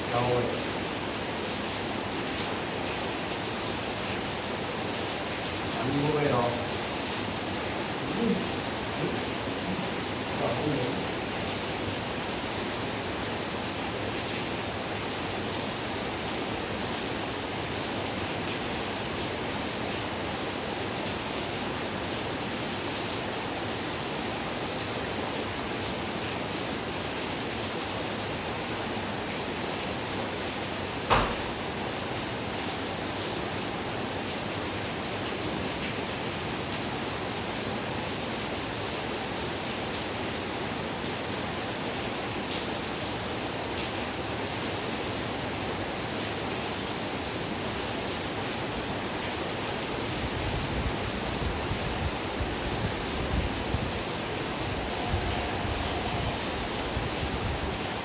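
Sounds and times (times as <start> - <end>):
heavy rain hissing: 0.0 - 58.0
sharp knock: 31.1 - 31.6.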